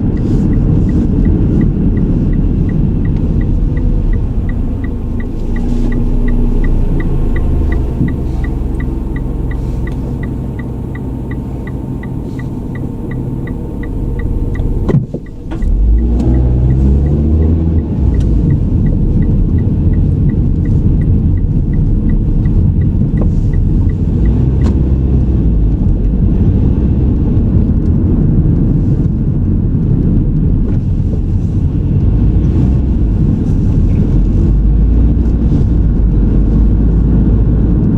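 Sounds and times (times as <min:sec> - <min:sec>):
regular ticking: 0:00.0 - 0:26.3
car road and engine rumble: 0:00.0 - 0:37.9.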